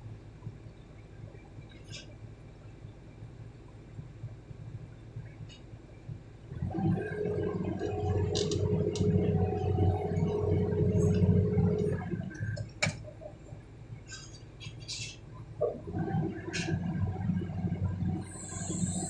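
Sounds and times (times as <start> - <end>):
excavator engine rumbling: 5.1 - 19.0
hydraulic whine: 6.5 - 12.7, 15.6 - 19.0.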